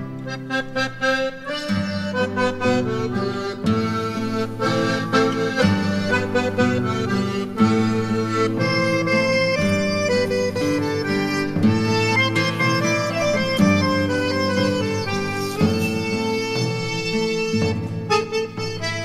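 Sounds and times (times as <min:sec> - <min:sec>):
instrumental background music: 0:00.0 - 0:19.0.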